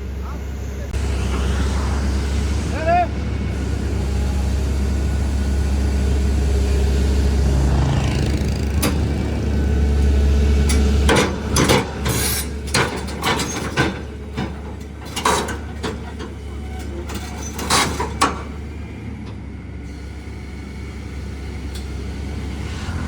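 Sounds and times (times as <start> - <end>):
heavy vehicle engine rumbling: 0.0 - 23.0
sharp knocks and clanks: 10.6 - 16.4.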